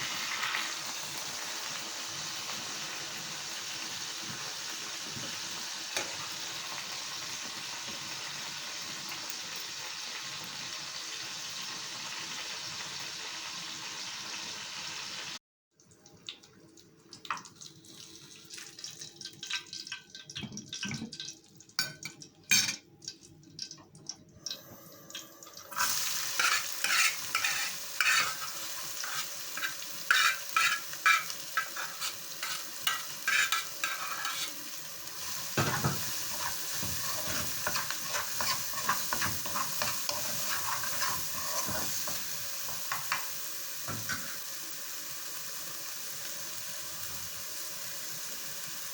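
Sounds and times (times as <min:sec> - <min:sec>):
food sizzling in a pan: 0:00.0 - 0:15.4, 0:17.3 - 0:20.3, 0:24.5 - 0:48.9
utensil clacking against pan: 0:26.4 - 0:34.5.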